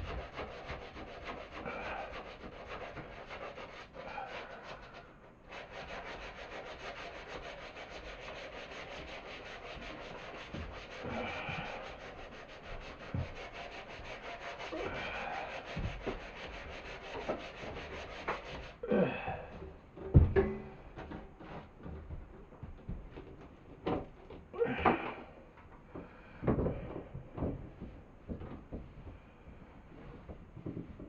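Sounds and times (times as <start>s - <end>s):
wood being sanded: 0.0s - 18.8s
knocks: 19.3s - 25.2s.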